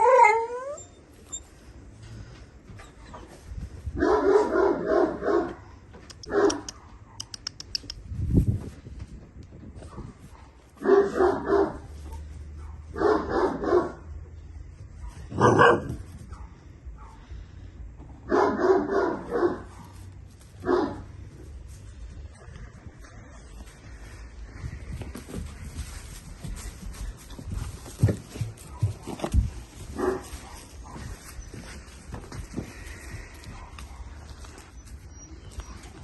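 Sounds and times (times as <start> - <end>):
puppies barking: 10.8 - 14.2, 15.0 - 17.2, 18.3 - 20.0, 20.6 - 21.2, 28.0 - 31.8.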